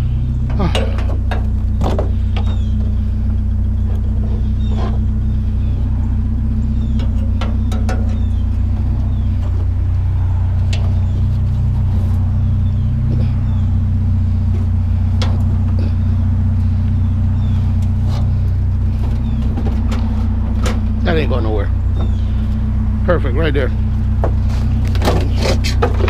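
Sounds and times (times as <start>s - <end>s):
truck engine idling: 0.0s - 26.0s.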